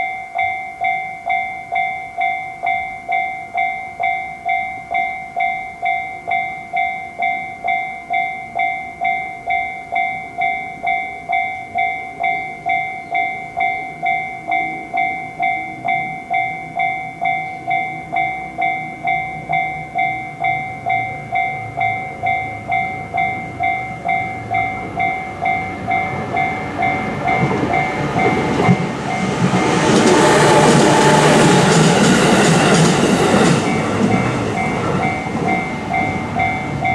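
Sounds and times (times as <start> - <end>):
level crossing bell ringing: 0.0 - 36.9
train rumbling: 18.6 - 36.9.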